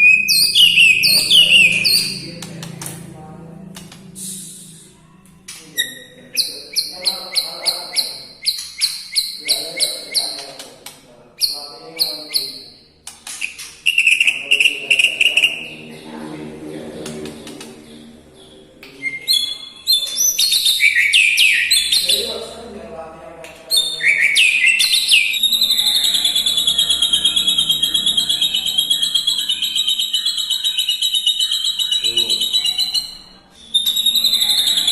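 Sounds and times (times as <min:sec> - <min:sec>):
bird singing sharp high notes: 0:00.0 - 0:10.5, 0:24.0 - 0:34.9.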